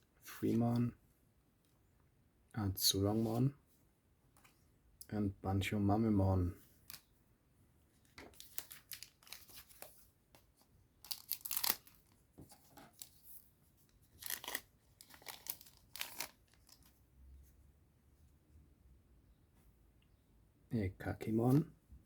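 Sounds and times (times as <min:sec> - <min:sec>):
wrapper tearing and crinkling: 0:08.4 - 0:09.8, 0:11.0 - 0:12.2, 0:14.2 - 0:16.9.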